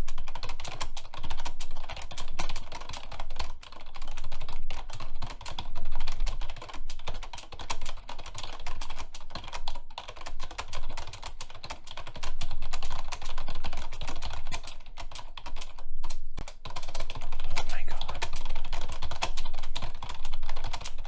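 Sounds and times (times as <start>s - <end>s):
fast typing on computer keyboard: 0.0s - 21.0s.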